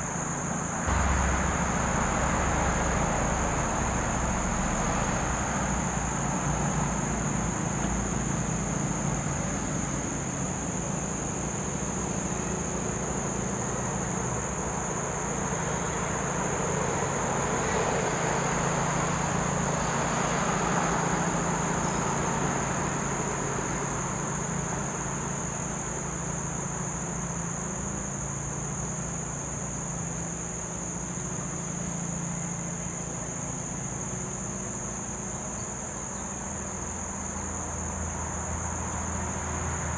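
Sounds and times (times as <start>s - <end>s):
insects trilling: 0.0s - 39.9s
low rumble: 0.9s - 7.6s.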